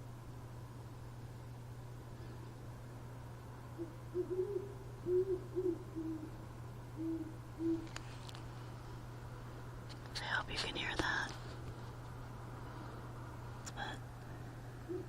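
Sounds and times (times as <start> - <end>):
steady low hum: 0.0 - 15.0
owl hooting: 3.8 - 8.0.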